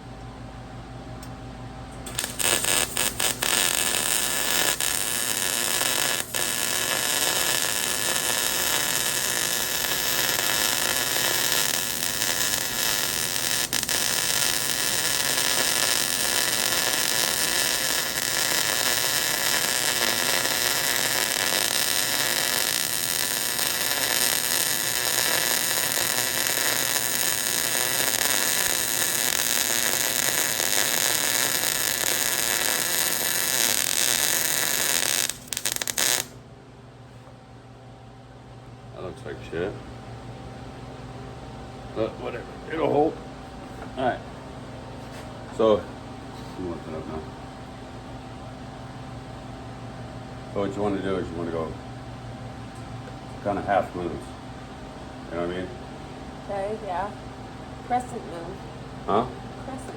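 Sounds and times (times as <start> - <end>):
welding arc hiss and crackle: 2.1 - 36.4.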